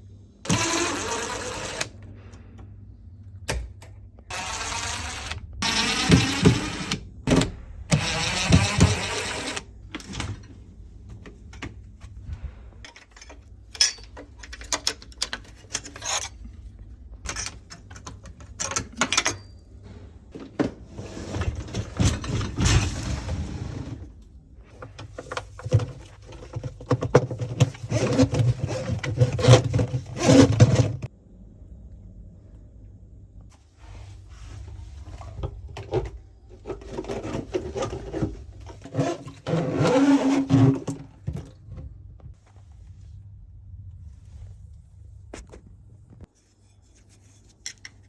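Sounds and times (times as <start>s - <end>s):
tools clicking and knocking: 12.8s - 16.4s, 17.2s - 19.6s.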